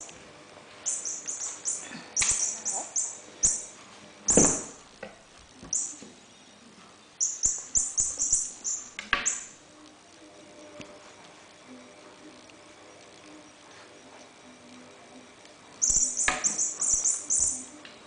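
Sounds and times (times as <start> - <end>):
kitten chirping: 0.9 - 3.7, 15.8 - 17.6.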